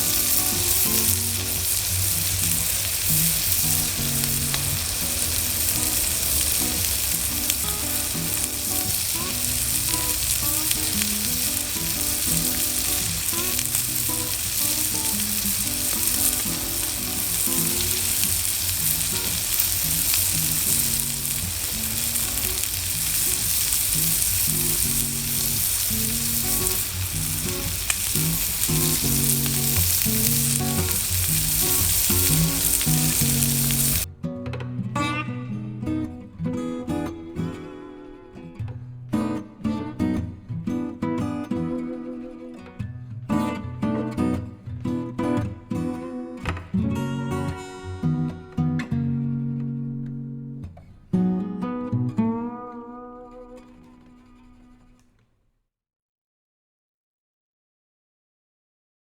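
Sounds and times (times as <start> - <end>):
steak sizzling: 0.0 - 34.1
plucked guitar music: 0.0 - 55.1.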